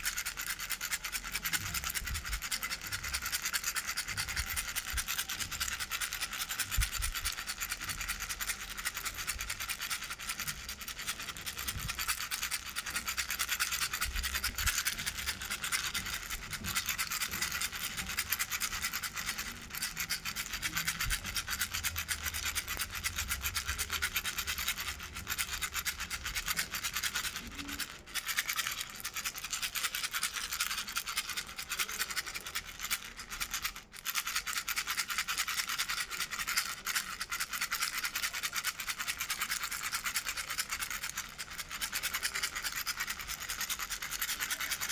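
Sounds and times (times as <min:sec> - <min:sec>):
baby rattle shaken: 0:00.0 - 0:44.9.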